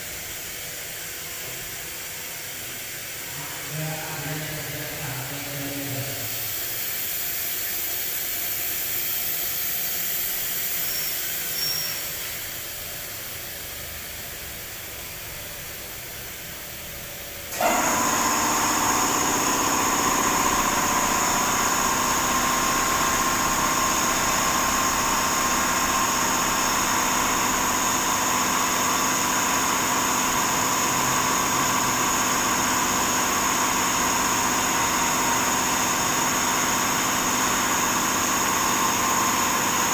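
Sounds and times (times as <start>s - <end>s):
hiss: 5.1s - 15.2s
milling machine running with whine: 9.9s - 13.2s, 17.4s - 39.9s.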